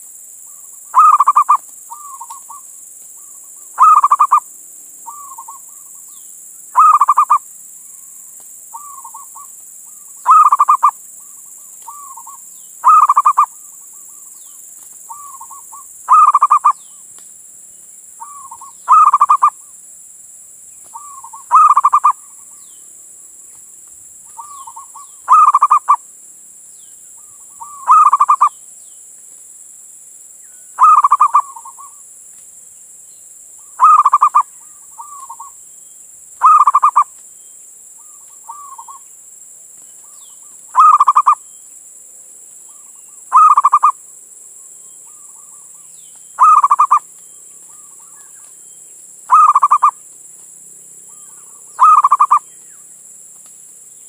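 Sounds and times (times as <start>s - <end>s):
dove cooing: 1.0s - 2.6s, 3.8s - 4.4s, 6.8s - 7.4s, 8.7s - 14.3s, 15.1s - 16.8s, 18.2s - 19.6s, 21.0s - 22.4s, 24.3s - 26.0s, 27.2s - 28.5s, 30.8s - 32.0s, 33.8s - 35.5s, 36.4s - 37.1s, 38.0s - 39.0s, 40.8s - 41.4s, 43.3s - 44.0s, 46.4s - 47.0s, 49.3s - 50.0s, 51.1s - 52.4s.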